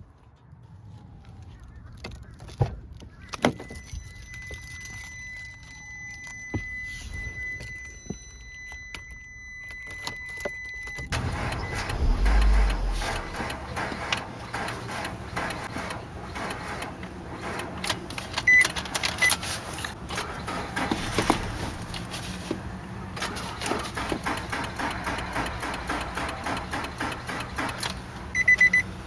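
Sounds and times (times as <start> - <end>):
car engine cranking: 10.8 - 29.0.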